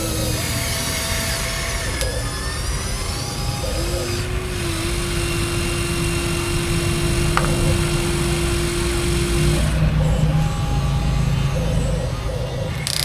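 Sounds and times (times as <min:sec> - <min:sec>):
electric motors whirring: 0:00.0 - 0:13.0
steady whine: 0:00.0 - 0:13.0.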